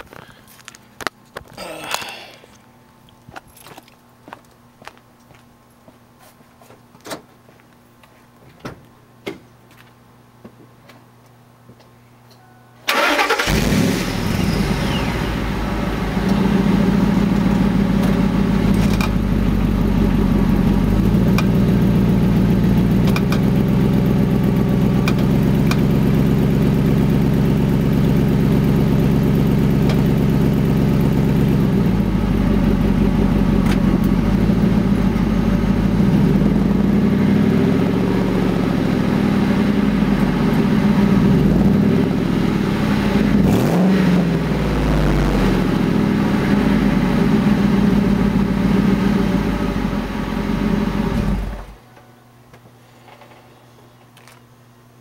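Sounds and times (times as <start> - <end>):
truck engine revving under load: 13.0 - 23.3, 33.6 - 51.8.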